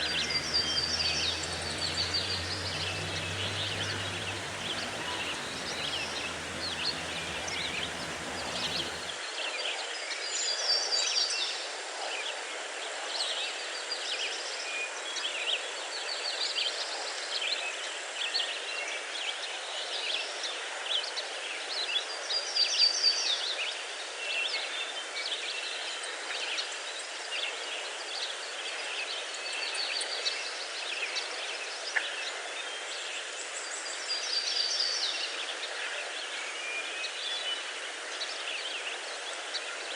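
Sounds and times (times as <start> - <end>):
small birds chirping: 0.0 - 9.2
waterfall rushing: 0.0 - 9.2.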